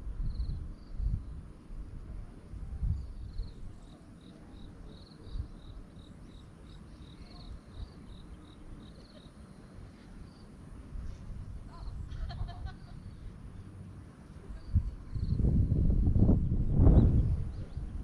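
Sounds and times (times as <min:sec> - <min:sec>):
wind rumble on microphone: 0:00.0 - 0:05.9, 0:10.8 - 0:18.0
insect chirping: 0:00.2 - 0:01.4, 0:02.9 - 0:10.6.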